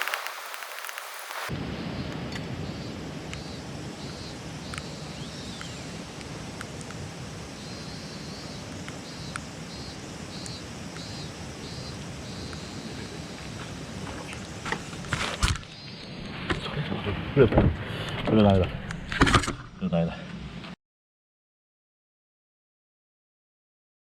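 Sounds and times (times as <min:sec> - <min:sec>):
high-pitched chirps: 0:07.6 - 0:14.4.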